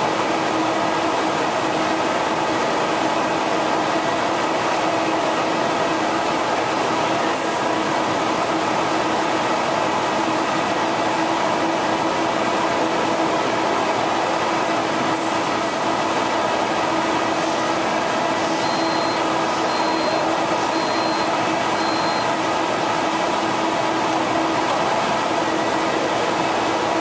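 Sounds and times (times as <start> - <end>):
printer whirring: 0.0 - 27.0
short high beeps: 18.6 - 22.4.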